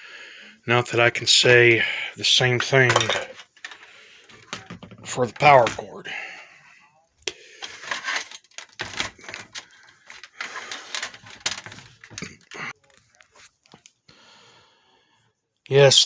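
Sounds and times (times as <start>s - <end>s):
objects clicking and knocking: 2.8s - 5.9s, 7.3s - 13.0s.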